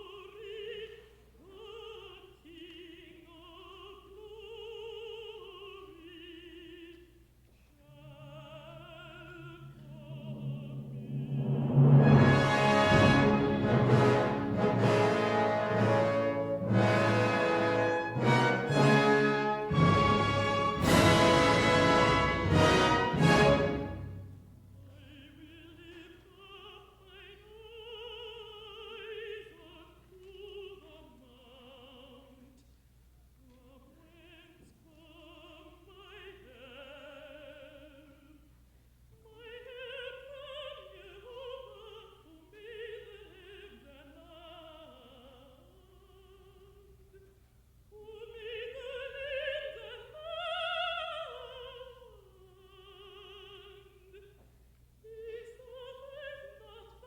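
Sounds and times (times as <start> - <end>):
quiet orchestra: 1.0 - 38.7
low hum: 7.8 - 18.8
woman singing: 39.2 - 54.4, 55.0 - 57.0.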